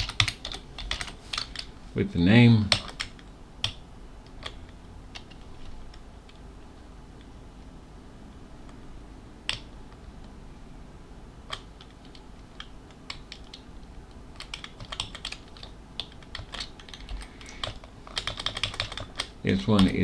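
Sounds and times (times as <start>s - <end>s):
typing on computer keyboard: 0.0s - 1.7s, 2.7s - 4.6s, 11.5s - 13.7s, 14.3s - 20.0s.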